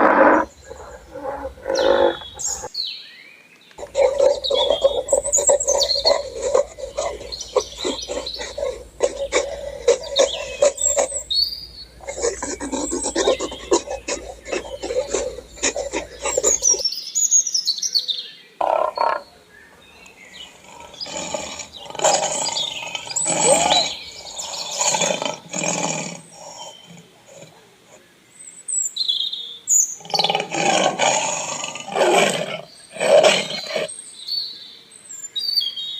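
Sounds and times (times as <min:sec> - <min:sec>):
big cat roaring: 0:00.0 - 0:02.7, 0:03.8 - 0:16.8, 0:18.6 - 0:19.2, 0:20.4 - 0:27.6, 0:30.0 - 0:33.9
rasping grating sound: 0:00.0 - 0:02.7, 0:03.8 - 0:16.8
birds chirping: 0:00.0 - 0:35.9.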